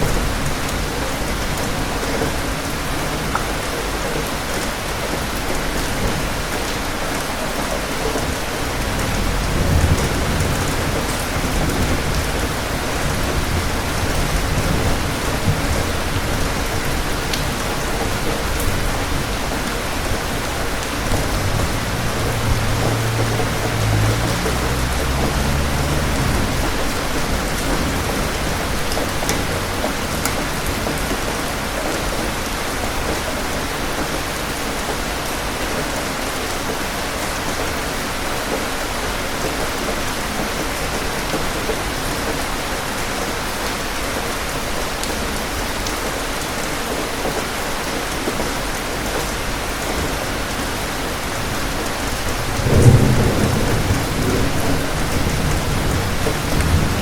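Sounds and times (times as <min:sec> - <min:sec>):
steady rain falling: 0:00.0 - 0:57.0
thunder rumbling: 0:08.2 - 0:31.4, 0:51.4 - 0:57.0
thunderclap: 0:08.2 - 0:31.4, 0:52.3 - 0:57.0.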